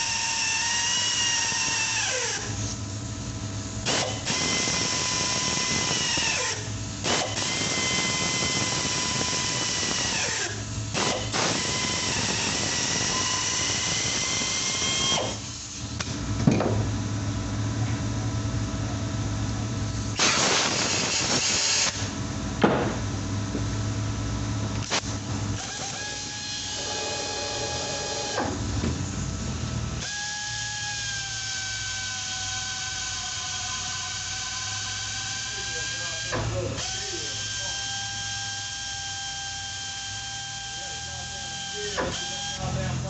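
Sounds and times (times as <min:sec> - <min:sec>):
rotary power tool whining: 0:00.0 - 0:02.8, 0:03.8 - 0:16.1, 0:20.1 - 0:22.2, 0:24.8 - 0:28.6, 0:30.0 - 0:42.9
steady low hum: 0:00.0 - 0:30.1
hissing burst: 0:20.1 - 0:22.1.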